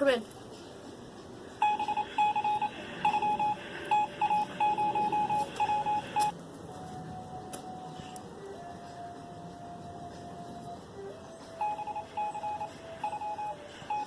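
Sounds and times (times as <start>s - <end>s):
morse code beeps: 1.6s - 6.3s, 11.5s - 14.0s.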